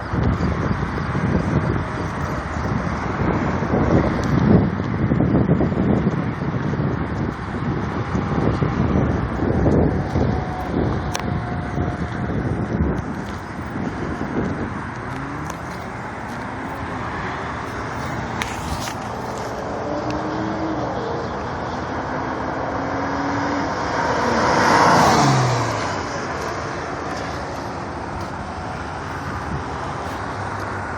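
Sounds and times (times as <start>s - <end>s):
car driving past: 14.9s - 30.0s.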